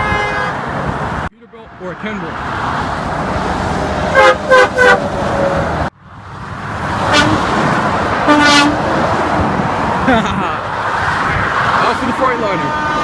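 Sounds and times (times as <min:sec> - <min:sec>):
truck air horn blasting: 0:00.0 - 0:00.6, 0:04.1 - 0:05.6, 0:07.0 - 0:07.5, 0:08.2 - 0:08.9, 0:12.4 - 0:13.0
highway traffic rushing: 0:00.0 - 0:13.0.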